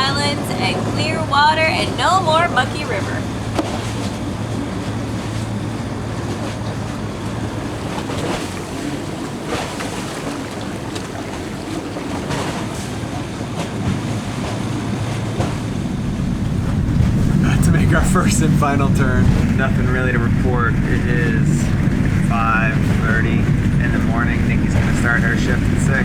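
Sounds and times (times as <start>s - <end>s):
boat engine hum: 0.0s - 26.0s
water rushing along hulls: 0.0s - 26.0s
wind buffeting microphone: 0.0s - 26.0s.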